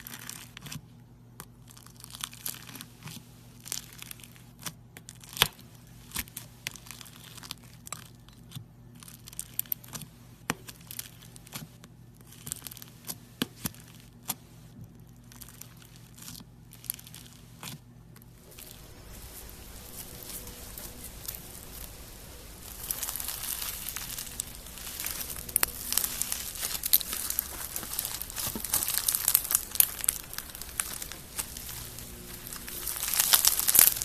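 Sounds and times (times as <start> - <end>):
slime crackling and tearing: 1.4 - 10.0, 15.2 - 17.8, 18.4 - 34.0
faint low hum: 14.7 - 34.0.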